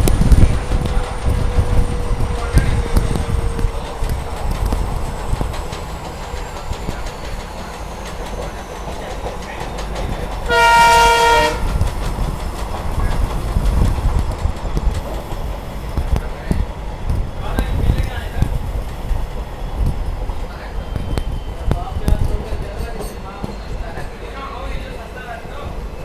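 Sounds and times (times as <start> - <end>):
train rumble with wheel clatter: 0.0 - 26.0
locomotive horn: 10.4 - 12.0.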